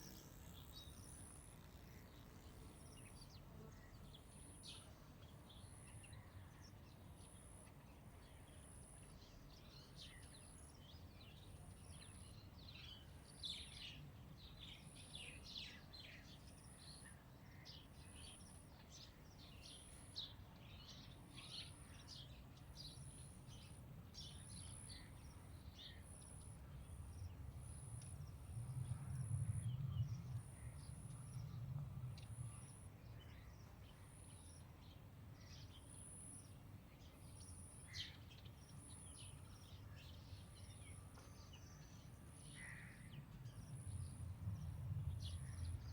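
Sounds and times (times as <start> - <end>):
low wind rumble on microphone: 26.6 - 33.3, 43.2 - 45.9.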